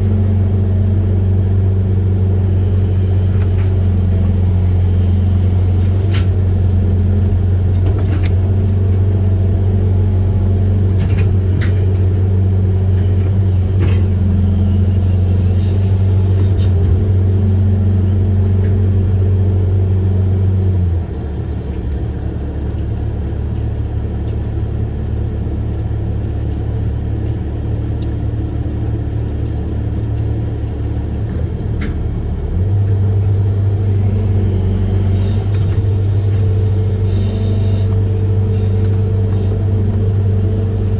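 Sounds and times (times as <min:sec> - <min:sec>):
excavator diesel engine droning: 0:00.0 - 0:40.9.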